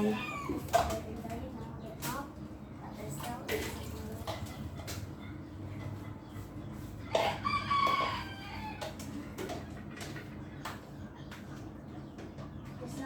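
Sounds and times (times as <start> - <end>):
rooster crowing: 0.0 - 0.7, 7.2 - 8.9.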